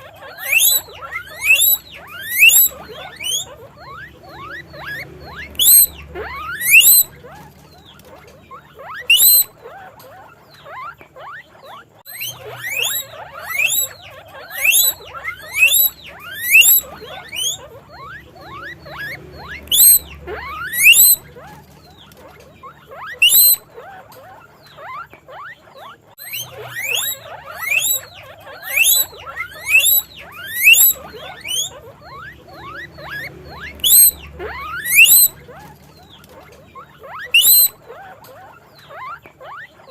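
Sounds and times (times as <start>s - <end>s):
guinea pig wheeking: 0.0s - 39.9s.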